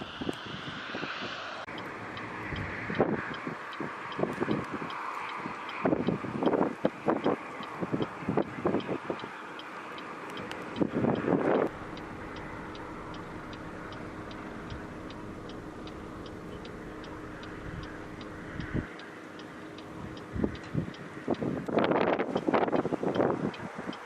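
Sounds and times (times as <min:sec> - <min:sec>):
loud rushing noise bursts: 0:00.0 - 0:03.2
idling car hum: 0:01.6 - 0:24.0
indicator flasher clicking: 0:01.7 - 0:24.0.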